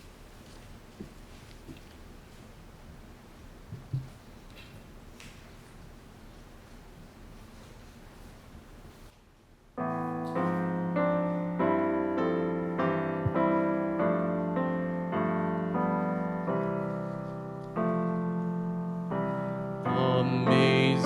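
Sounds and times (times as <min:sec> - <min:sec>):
keyboard playing hymn chords: 0:09.8 - 0:21.0.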